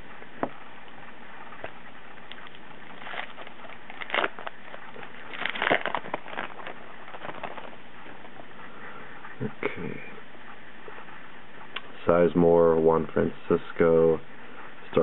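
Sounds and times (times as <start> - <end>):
wrapper crinkling and tearing: 1.6 - 8.3.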